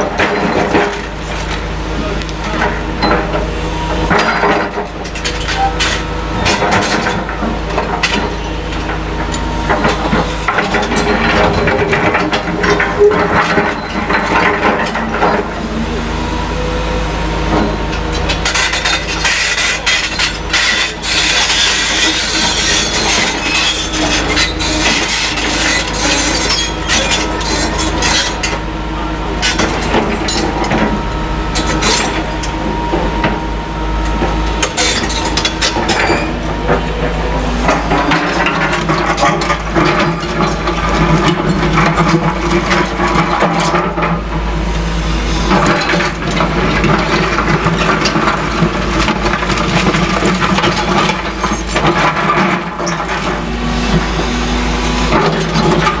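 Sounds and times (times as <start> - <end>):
demolition rubble clatter and crunch: 0.0 - 15.6, 17.4 - 33.4, 34.0 - 56.0
excavator diesel engines running: 0.0 - 56.0
scraping and grinding: 18.3 - 28.6.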